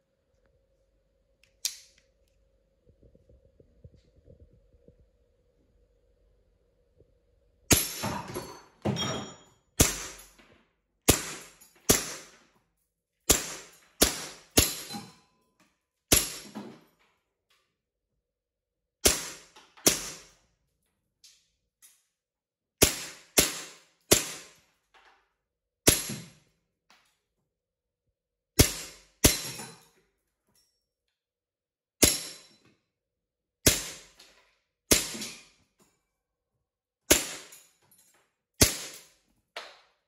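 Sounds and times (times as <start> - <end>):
airsoft pistol shots: 9.8 - 10.2, 11.1 - 12.4, 13.3 - 14.9, 19.0 - 20.3, 22.8 - 24.6, 38.6 - 39.0.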